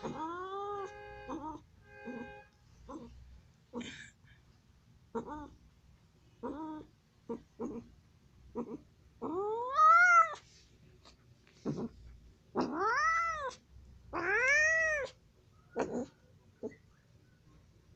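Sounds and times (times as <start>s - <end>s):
cat meowing: 0.0s - 3.1s, 5.2s - 5.5s, 6.4s - 7.8s, 8.6s - 10.4s, 12.6s - 15.2s.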